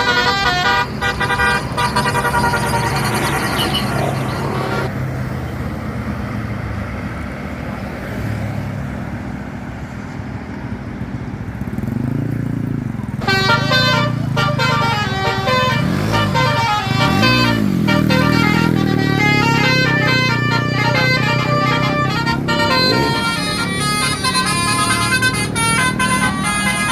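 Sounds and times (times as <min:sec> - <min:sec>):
musical bus horn tune: 0:00.0 - 0:04.9, 0:13.2 - 0:26.9
bus engine running: 0:00.0 - 0:08.1, 0:08.7 - 0:26.9.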